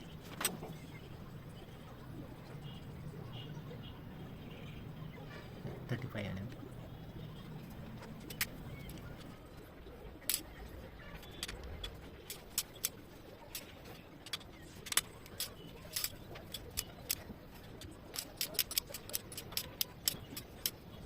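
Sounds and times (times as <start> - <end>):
hand tools clicking on metal: 0.0 - 9.3.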